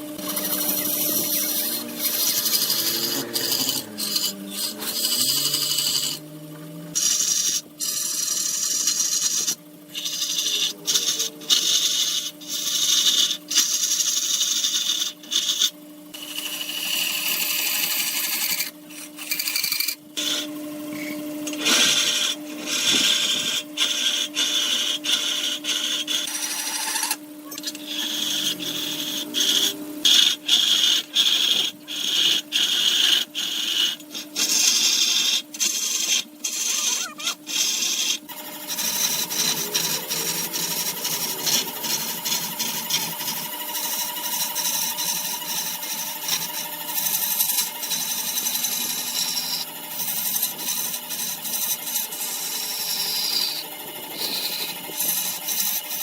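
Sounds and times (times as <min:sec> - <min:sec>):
turning tool scraping wood: 0:00.0 - 0:56.0
wood lathe humming: 0:00.0 - 0:56.0.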